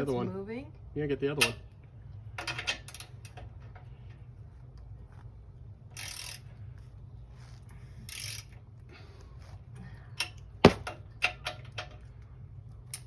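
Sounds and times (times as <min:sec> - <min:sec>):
ratchet wrench clicking: 0:06.0 - 0:06.5, 0:08.1 - 0:08.5.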